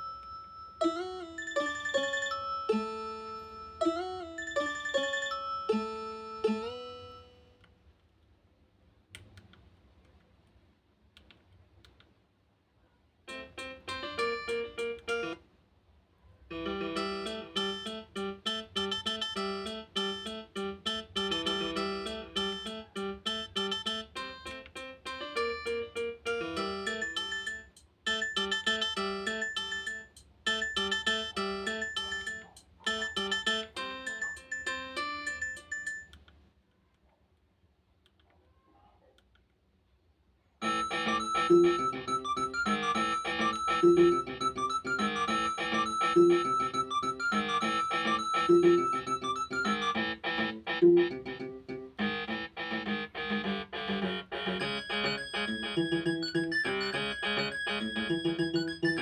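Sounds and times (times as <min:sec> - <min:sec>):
phone ringtone tune: 0:00.0 - 0:07.5, 0:13.3 - 0:15.4, 0:16.5 - 0:36.1, 0:40.6 - 0:59.0
fast electronic keyboard-like notes: 0:16.5 - 0:35.8, 0:40.6 - 0:59.0.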